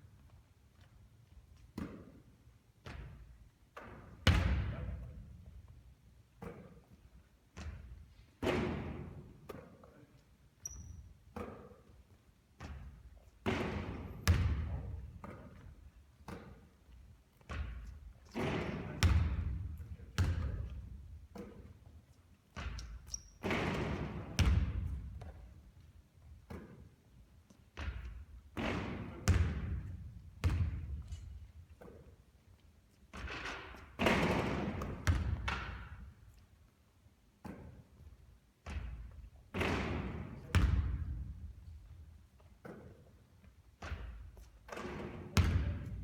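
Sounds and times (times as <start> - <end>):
basketball bouncing: 1.8 - 2.2, 2.8 - 5.3, 6.3 - 9.6, 12.6 - 25.6, 26.2 - 27.1, 27.8 - 32.1, 33.1 - 36.1, 37.4 - 42.0, 43.8 - 46.0.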